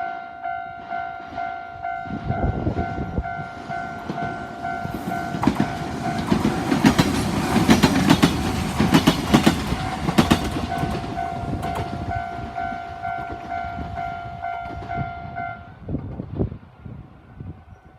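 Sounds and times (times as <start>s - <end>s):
crossing warning bell ringing: 0.0s - 7.0s, 8.9s - 15.8s
train wheels clattering over rail joints: 4.0s - 13.7s.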